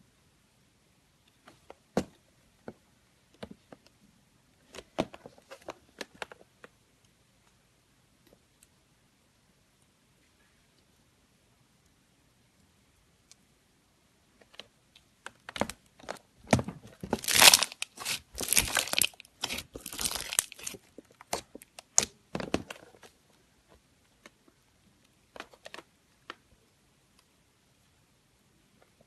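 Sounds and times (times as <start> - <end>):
slime crackling and popping: 17.1 - 22.1.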